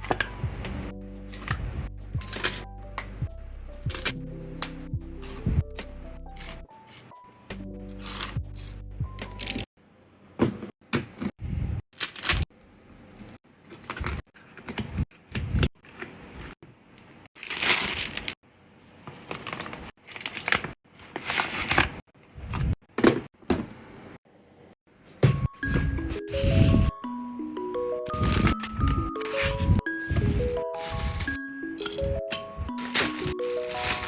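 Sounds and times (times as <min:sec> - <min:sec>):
packaging rustling: 0:32.8 - 0:34.0.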